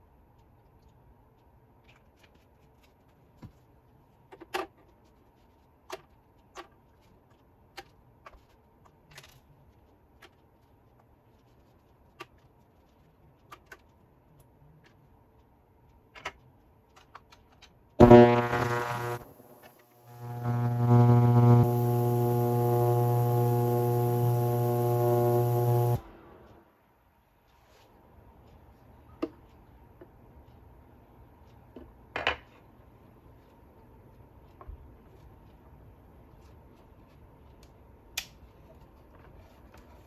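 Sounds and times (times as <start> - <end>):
loud droning buzz: 18.0 - 26.3.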